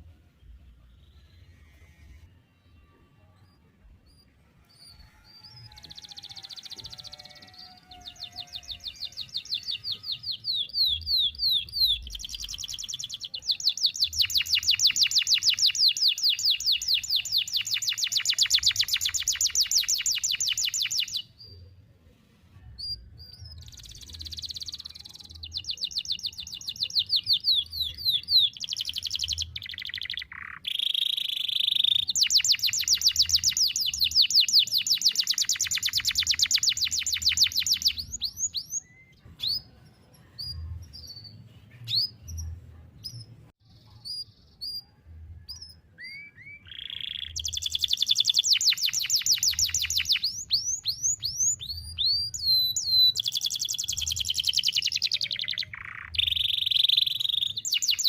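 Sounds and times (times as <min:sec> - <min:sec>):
canary singing rapid trills: 0:03.5 - 0:21.4, 0:23.6 - 0:39.7, 0:46.0 - 0:58.0.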